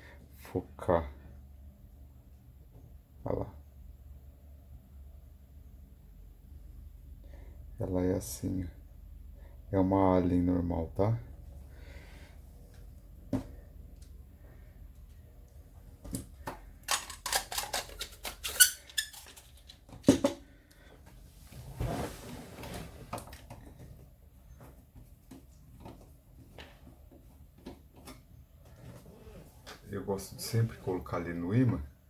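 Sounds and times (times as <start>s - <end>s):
screwdriver clicking on metal parts: 16.9s - 19.8s
brief scraping rustle: 21.4s - 23.1s.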